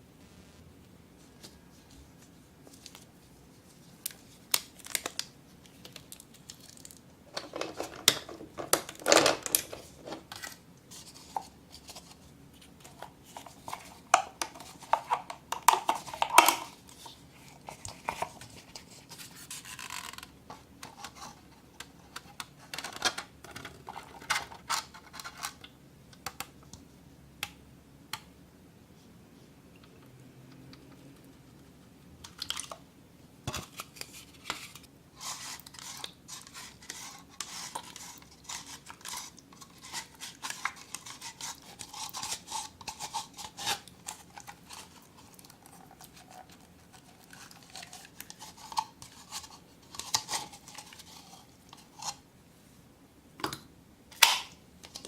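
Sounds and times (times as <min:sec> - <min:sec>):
scratching and rustling: 0:33.6 - 0:52.2.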